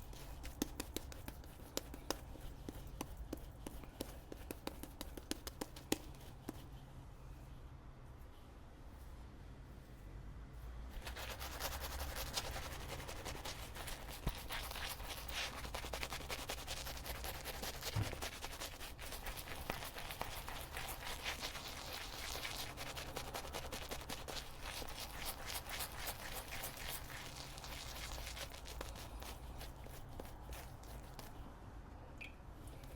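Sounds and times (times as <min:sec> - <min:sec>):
shaving brush scratching lather: 0:11.0 - 0:31.3.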